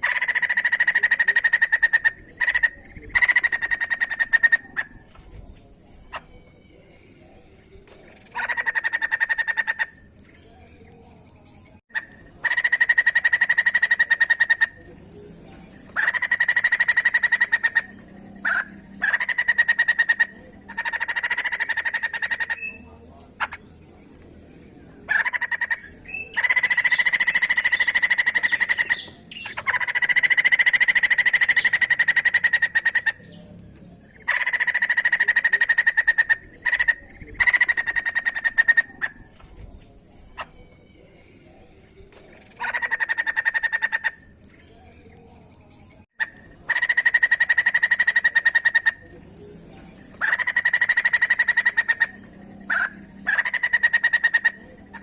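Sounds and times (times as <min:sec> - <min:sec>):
bird calling in rattling notes: 0:08.1 - 0:10.8, 0:15.8 - 0:22.8, 0:25.1 - 0:33.3.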